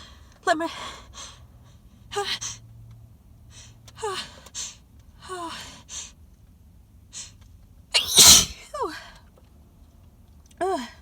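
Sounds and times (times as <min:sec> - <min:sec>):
woman gasping before sneeze: 0:08.0 - 0:08.5.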